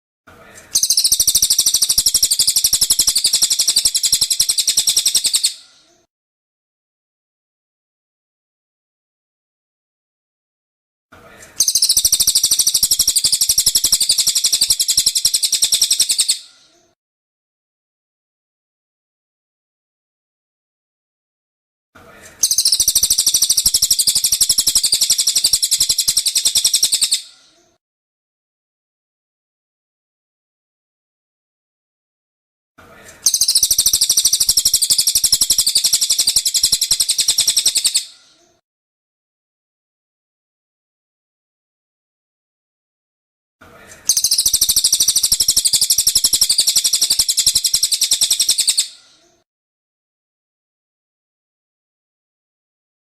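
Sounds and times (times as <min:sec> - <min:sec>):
bird singing rapid trill: 0:00.8 - 0:05.6, 0:11.6 - 0:16.5, 0:22.4 - 0:27.8, 0:33.2 - 0:38.2, 0:44.1 - 0:49.0.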